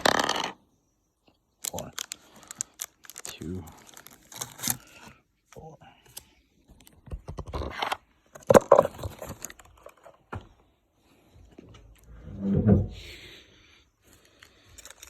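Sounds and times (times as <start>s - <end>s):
wrapper crinkling and rustling: 1.6s - 5.0s, 8.7s - 10.1s, 14.1s - 15.0s.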